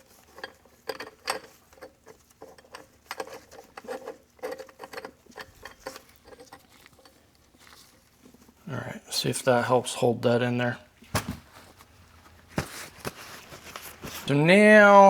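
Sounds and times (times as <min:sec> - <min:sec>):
small metal parts clicking: 0:00.1 - 0:07.2.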